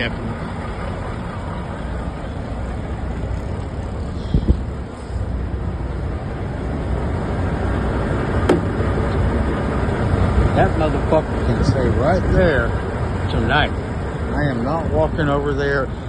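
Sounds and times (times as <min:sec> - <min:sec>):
vehicle engine rumble: 0:00.0 - 0:16.0
short knocks: 0:08.4 - 0:08.8.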